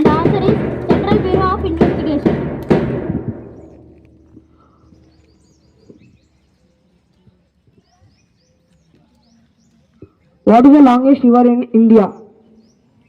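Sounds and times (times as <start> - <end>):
echoing loud beats: 0.0 - 5.9
small birds chirping: 3.2 - 13.0.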